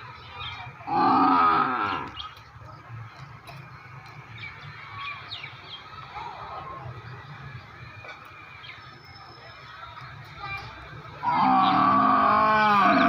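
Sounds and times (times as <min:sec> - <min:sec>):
water buffalo mooing: 0:00.9 - 0:02.1, 0:11.2 - 0:13.0.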